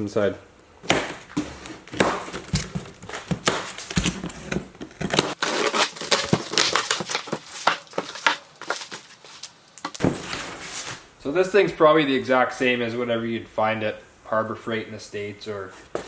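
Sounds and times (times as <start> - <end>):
packing crinkling and tearing: 1.2 - 11.0
small knocks and scrapes: 1.2 - 11.1
cardboard box being opened: 1.4 - 11.0.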